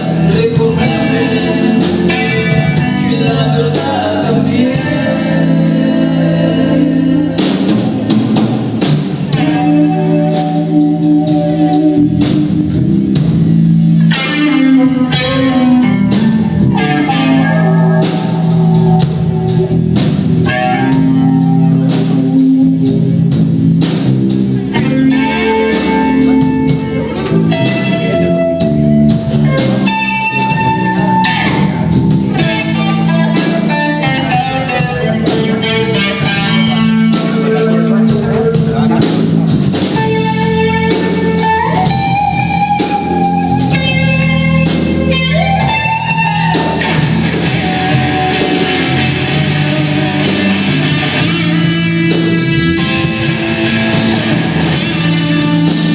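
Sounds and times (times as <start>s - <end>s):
bass guitar: 0.0s - 55.9s
drum kit: 0.0s - 55.9s
electric guitar: 0.0s - 55.9s.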